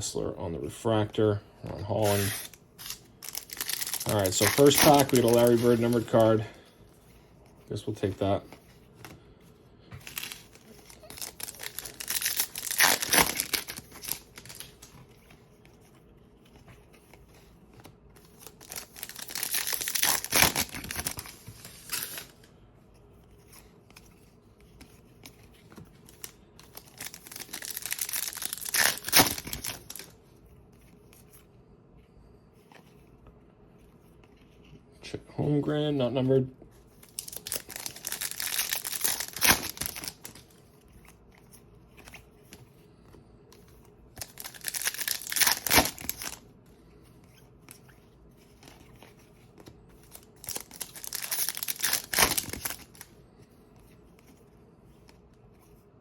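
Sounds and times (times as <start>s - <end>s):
foil wrappers tearing and crinkling: 2.0s - 6.5s, 10.1s - 14.9s, 18.3s - 22.4s, 26.1s - 30.2s, 37.0s - 40.5s, 44.2s - 46.4s, 50.0s - 53.1s.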